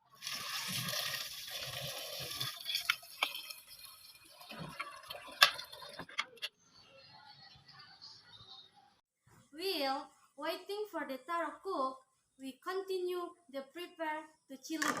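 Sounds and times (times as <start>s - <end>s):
water running into a pot: 0.0s - 6.1s.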